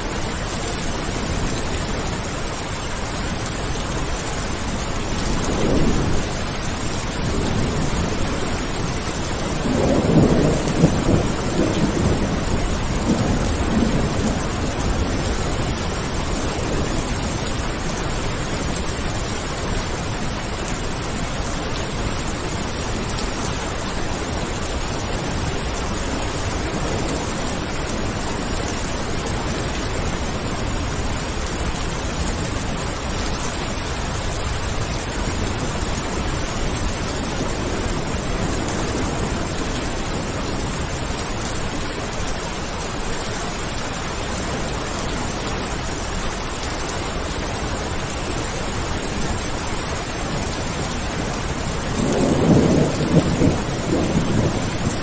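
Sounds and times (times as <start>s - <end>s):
steady rain falling: 0.0s - 55.0s
rolling thunder: 3.5s - 18.9s, 21.1s - 42.4s, 50.0s - 55.0s.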